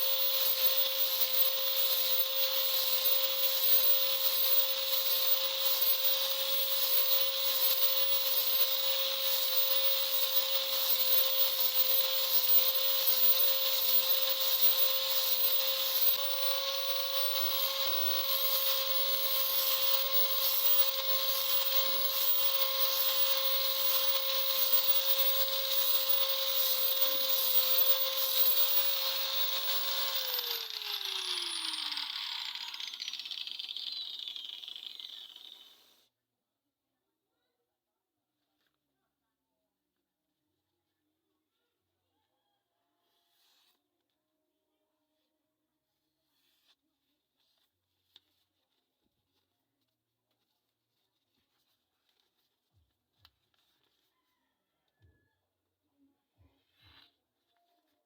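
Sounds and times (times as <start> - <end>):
electric grinder grinding steel: 0.0 - 35.9
grinder winding down: 0.0 - 35.9.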